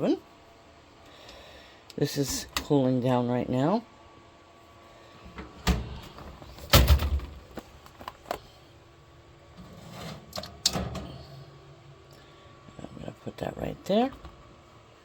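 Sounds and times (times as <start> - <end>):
oven parts clunking and clicking: 5.2 - 8.4, 9.5 - 11.3.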